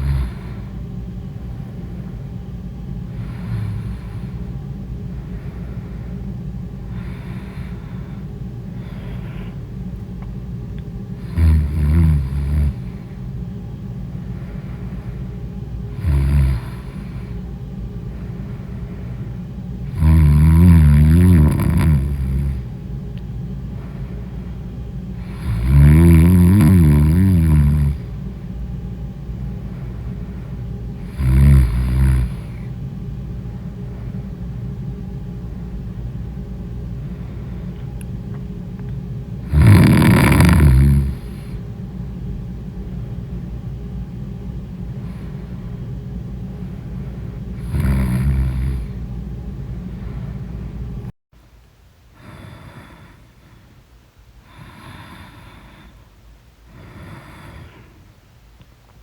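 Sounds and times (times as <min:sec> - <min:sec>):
person snoring: 0:00.0 - 0:00.8, 0:03.1 - 0:04.4, 0:06.9 - 0:08.2, 0:11.2 - 0:13.2, 0:15.9 - 0:17.4, 0:19.8 - 0:22.7, 0:25.2 - 0:28.2, 0:31.0 - 0:32.7, 0:39.4 - 0:41.6, 0:45.0 - 0:45.6, 0:47.5 - 0:49.0, 0:52.2 - 0:53.4, 0:54.5 - 0:56.0, 0:56.7 - 0:58.0
steady low rumble: 0:00.0 - 0:52.2.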